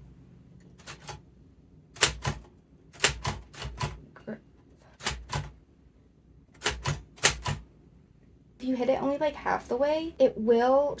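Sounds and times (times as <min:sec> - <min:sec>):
typewriter keys clacking: 0:00.8 - 0:01.2, 0:02.0 - 0:04.0, 0:05.0 - 0:05.5, 0:06.6 - 0:07.6.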